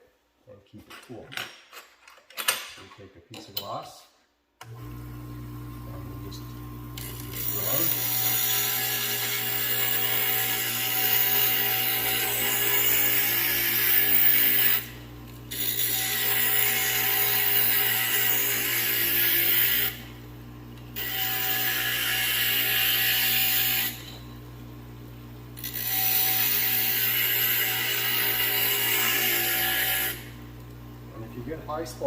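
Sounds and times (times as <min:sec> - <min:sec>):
grinder motor hum: 0:04.6 - 0:32.0
glass grinder grinding glass: 0:05.8 - 0:30.8.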